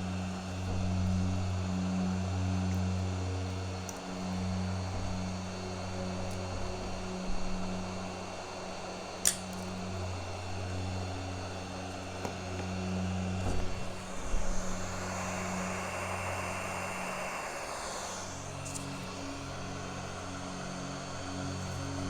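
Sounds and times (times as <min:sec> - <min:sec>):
hot-air rework station blowing: 0:00.0 - 0:22.0
low hum: 0:00.0 - 0:22.0
sharp click: 0:09.2 - 0:09.6.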